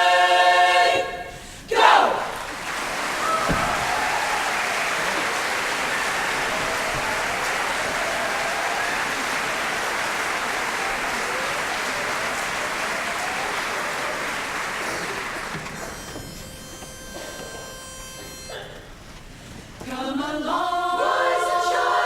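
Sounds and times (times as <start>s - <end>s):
cheering: 1.7s - 16.0s
audience applauding: 2.1s - 18.5s.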